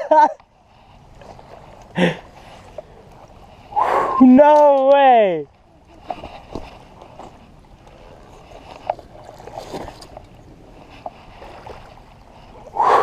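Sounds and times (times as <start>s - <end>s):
steady outdoor hiss: 0.0s - 13.0s
water sloshing: 5.6s - 13.0s.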